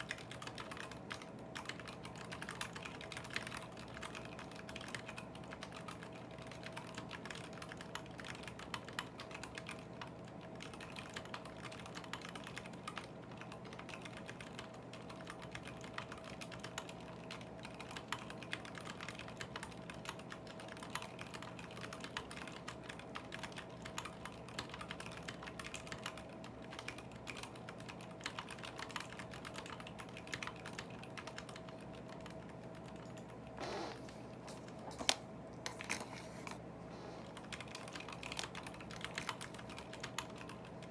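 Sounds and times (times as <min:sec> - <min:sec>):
mechanical keyboard typing: 0:00.0 - 0:33.4, 0:37.3 - 0:40.9
faint steady hum: 0:00.0 - 0:40.9.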